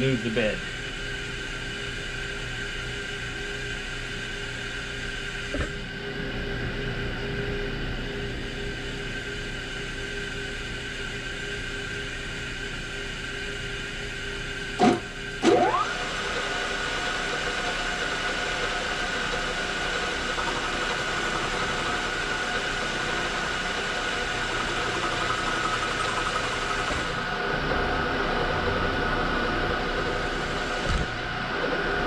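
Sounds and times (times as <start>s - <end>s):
machine tool motor humming: 14.8s - 27.4s.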